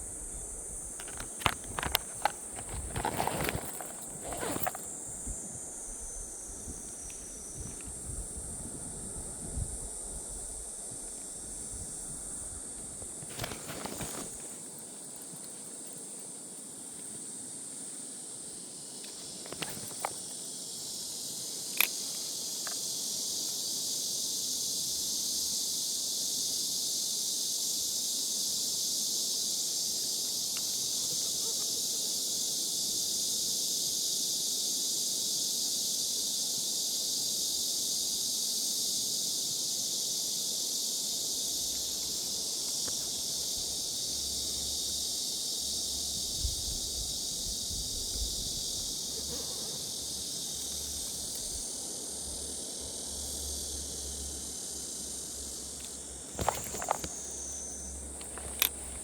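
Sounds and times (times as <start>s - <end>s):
insects chirping: 0.0s - 59.0s
sharp clicks: 58.2s - 58.9s.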